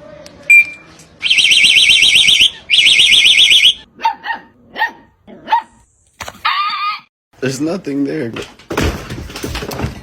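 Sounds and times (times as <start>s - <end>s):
short beep: 0.5s - 0.9s
electronic alarm warbling: 0.5s - 3.8s.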